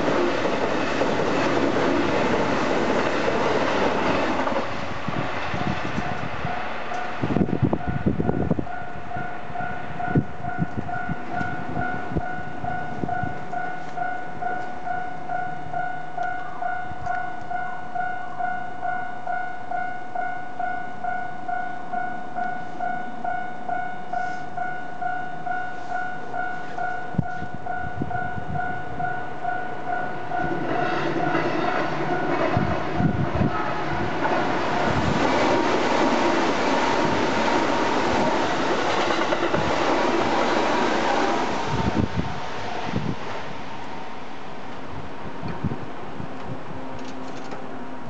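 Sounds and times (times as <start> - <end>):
train rumble: 0.0 - 48.0
level-crossing alarm bell: 6.0 - 32.4.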